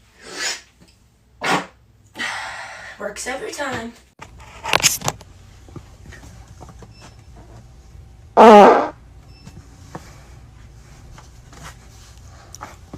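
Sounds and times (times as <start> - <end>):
loud fart: 1.4 - 1.8, 8.4 - 9.0.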